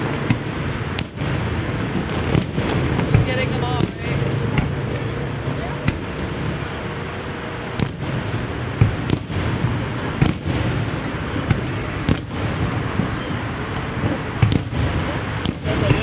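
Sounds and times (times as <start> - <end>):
fireworks bangs: 0.0 - 16.0
low rumble: 1.3 - 11.6.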